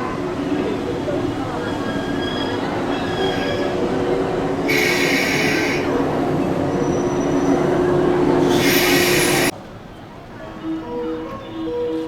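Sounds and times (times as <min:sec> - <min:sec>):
electric train running hum: 0:00.0 - 0:12.0
short bursts of hiss: 0:04.7 - 0:05.8, 0:08.5 - 0:09.5.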